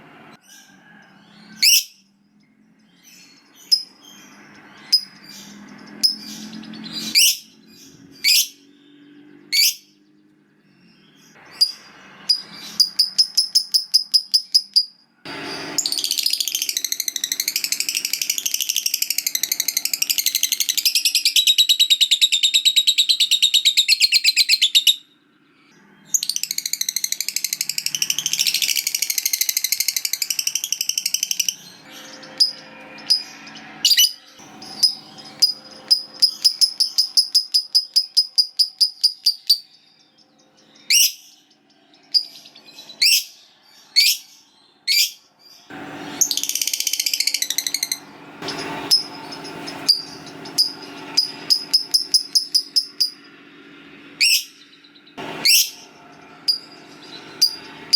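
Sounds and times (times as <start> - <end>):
rapid sharp bird chips: 11.4 - 22.6, 26.2 - 39.7
lovebird harsh rattling chatter: 15.8 - 24.4, 26.2 - 39.6, 46.2 - 53.2, 55.4 - 57.9.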